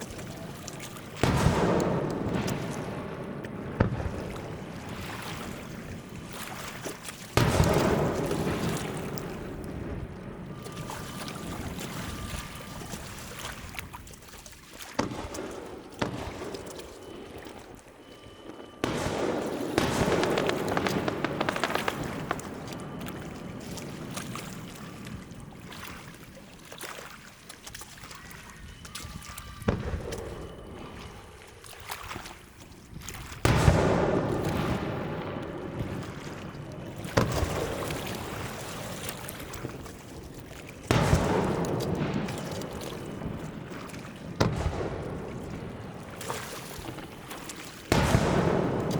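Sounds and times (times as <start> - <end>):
fireworks booming: 1.2 - 6.1, 7.4 - 12.0, 15.0 - 25.3, 29.7 - 30.9, 33.4 - 38.8, 40.8 - 48.9
crackling firework bursts: 18.8 - 24.7.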